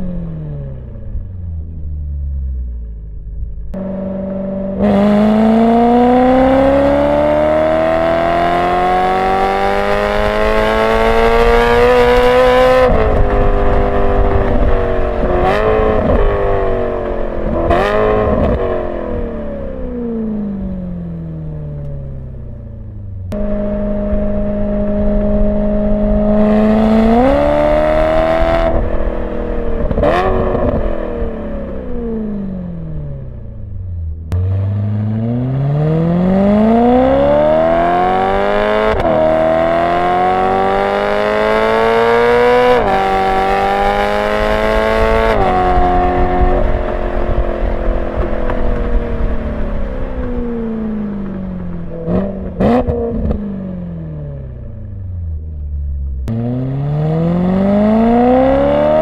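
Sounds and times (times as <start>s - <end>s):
car engine revving through gears: 3.7s - 22.3s, 23.3s - 33.7s, 34.3s - 59.0s.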